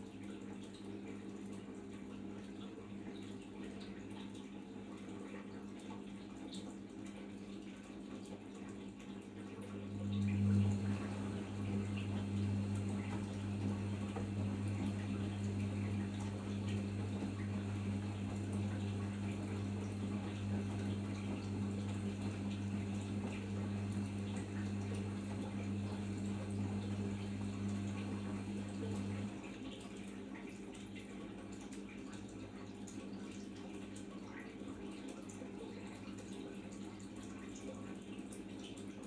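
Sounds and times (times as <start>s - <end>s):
water running through washing machine: 0.0s - 39.0s
low electric hum: 9.6s - 29.5s.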